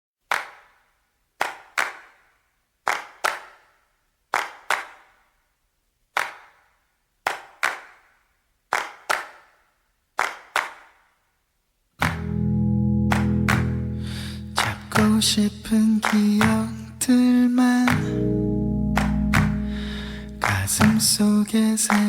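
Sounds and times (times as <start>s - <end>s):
hand claps with echo: 0.3s - 5.4s, 6.1s - 11.2s, 12.0s - 12.3s, 13.1s - 15.2s, 16.0s - 16.8s, 17.9s - 18.2s, 19.0s - 21.3s.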